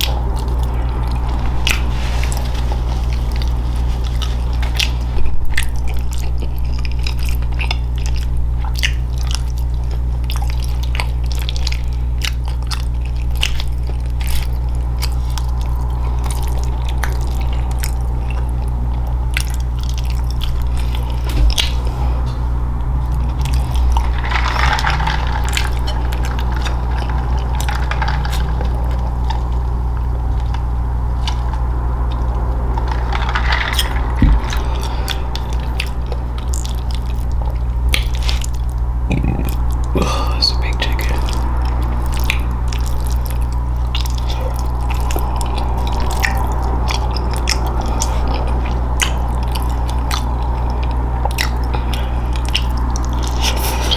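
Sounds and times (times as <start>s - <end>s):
low electrical hum: 0.0s - 53.9s
person chewing food: 0.0s - 53.9s
small clicks and crackles: 23.2s - 38.8s.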